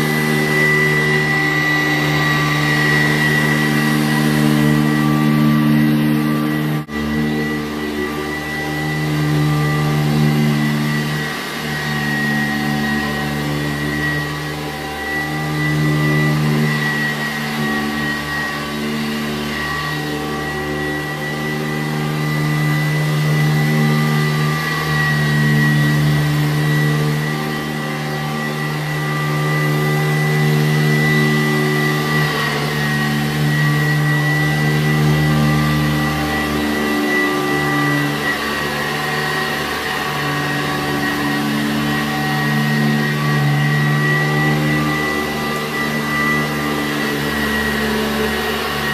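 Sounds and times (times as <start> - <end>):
vacuum cleaner motor whine: 0.0 - 48.9.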